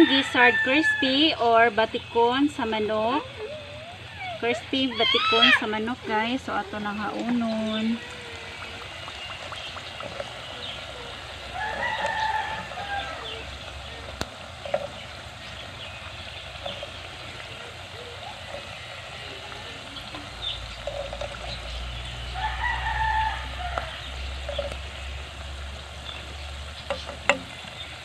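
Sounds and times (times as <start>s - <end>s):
rooster crowing: 0.0s - 1.5s, 11.0s - 14.0s, 22.3s - 24.1s
chickens clucking: 3.2s - 25.1s.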